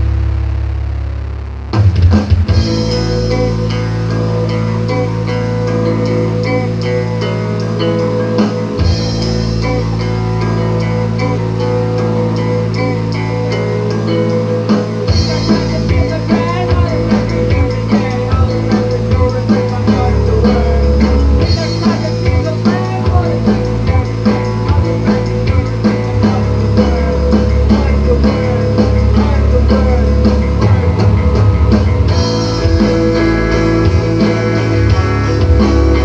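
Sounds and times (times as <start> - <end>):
electric guitars: 0.0 - 36.0
drum kit playing: 1.6 - 36.0.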